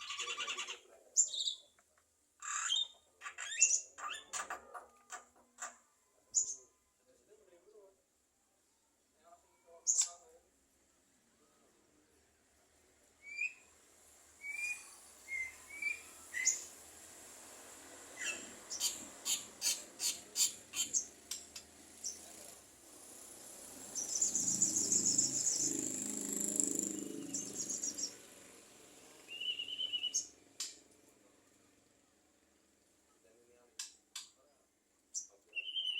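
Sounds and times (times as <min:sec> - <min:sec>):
bird harsh rasping chatter: 0:00.0 - 0:01.4, 0:18.2 - 0:22.5, 0:23.2 - 0:28.3
bird whistled chirps: 0:13.2 - 0:13.7, 0:14.4 - 0:16.7, 0:29.3 - 0:30.3, 0:35.5 - 0:35.9.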